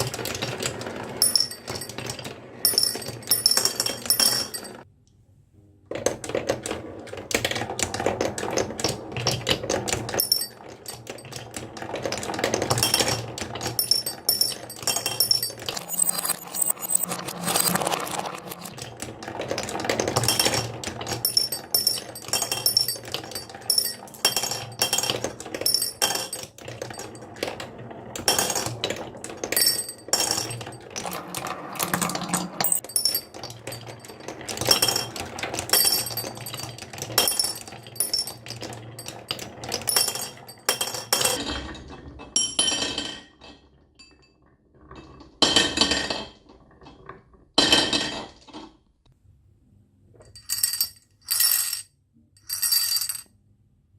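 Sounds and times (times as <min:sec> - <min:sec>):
marbles rattling down wooden track: 0:00.0 - 0:04.8, 0:05.9 - 0:41.4, 0:52.4 - 0:53.3.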